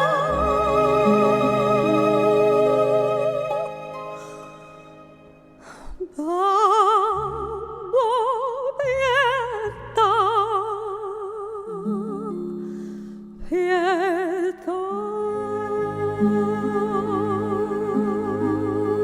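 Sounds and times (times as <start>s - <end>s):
woman singing opera: 0.0s - 5.1s, 5.9s - 12.8s, 13.4s - 19.0s
sustained instrumental accompaniment: 0.0s - 5.7s.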